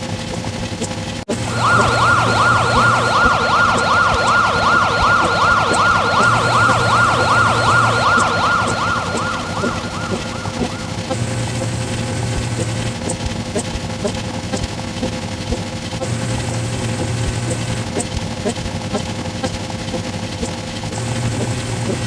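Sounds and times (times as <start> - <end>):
siren yelping: 1.3 - 11.3.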